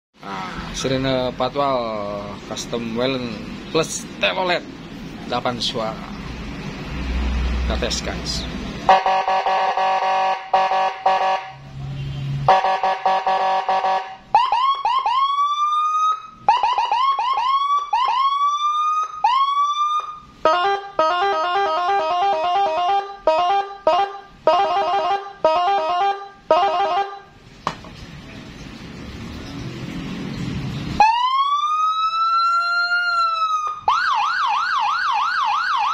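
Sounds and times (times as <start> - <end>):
electronic police siren: 8.9 - 11.6, 12.5 - 27.3, 31.0 - 35.9.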